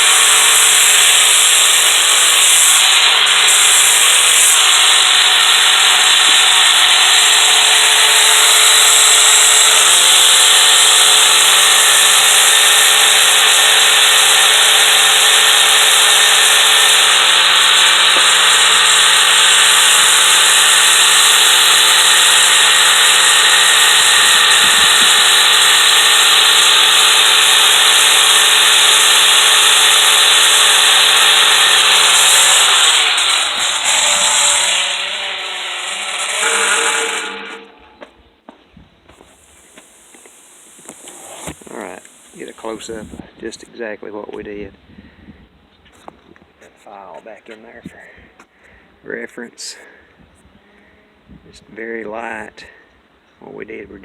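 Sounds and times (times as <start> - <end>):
sanding disc grinding on steel: 0.0 - 38.0, 39.1 - 43.2
power tool motor whine: 0.0 - 38.2, 39.1 - 43.2.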